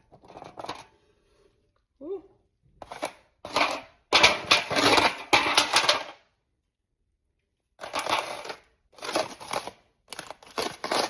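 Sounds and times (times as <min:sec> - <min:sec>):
noodles clattering into pans: 0:00.0 - 0:01.0, 0:02.8 - 0:06.2, 0:07.8 - 0:11.0.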